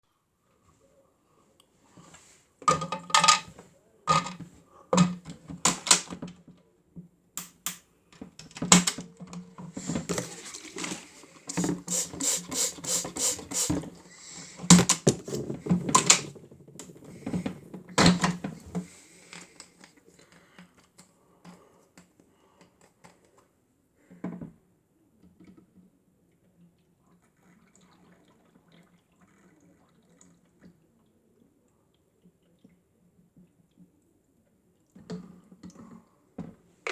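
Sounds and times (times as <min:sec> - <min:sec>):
plastic clicks and knocks: 0:02.6 - 0:06.4, 0:07.4 - 0:10.4, 0:14.6 - 0:18.9.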